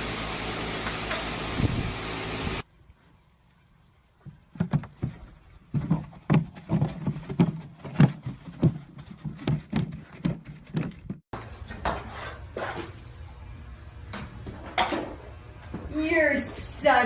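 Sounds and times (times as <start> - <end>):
dull uneven thumps: 4.2 - 11.2.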